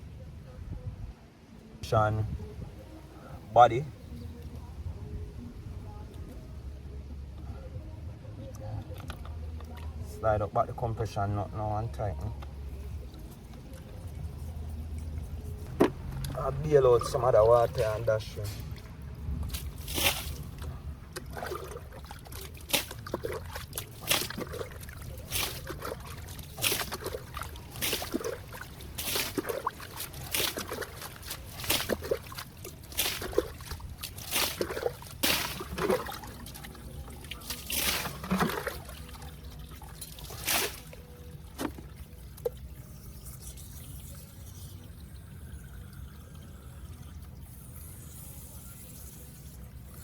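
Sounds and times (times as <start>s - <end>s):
water splashing as poured out: 16.0s - 47.7s.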